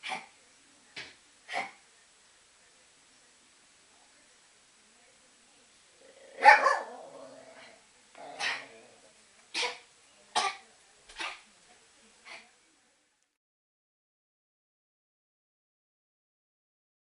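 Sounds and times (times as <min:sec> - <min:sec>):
dog coughing: 0:08.3 - 0:08.7, 0:09.5 - 0:10.6, 0:11.2 - 0:11.4.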